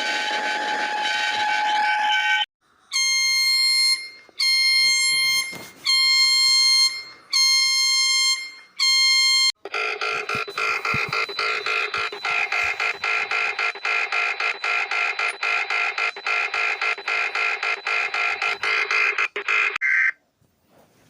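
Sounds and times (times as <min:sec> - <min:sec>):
steady alarm tone: 0:00.0 - 0:19.8
buzzy alarm beeps: 0:03.0 - 0:19.8
pulsing electronic sound: 0:09.7 - 0:19.8.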